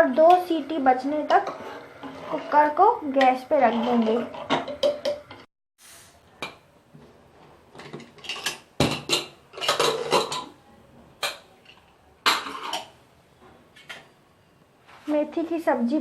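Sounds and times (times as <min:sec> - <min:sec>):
metal spoon scraping steel pot: 0:01.2 - 0:05.4.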